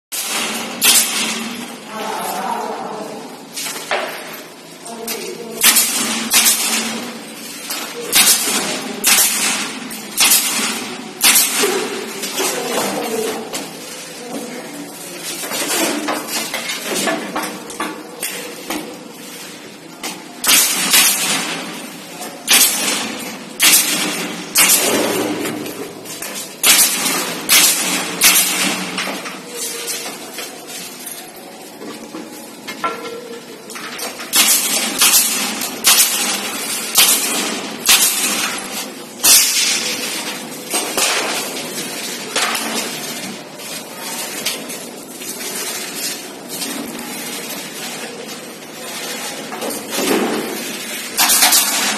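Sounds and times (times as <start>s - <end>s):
nail gun firing: 0.2s - 1.6s, 5.6s - 7.1s, 8.1s - 12.0s, 20.4s - 21.8s, 22.5s - 25.6s, 26.6s - 29.2s, 34.3s - 39.9s, 51.2s - 51.9s.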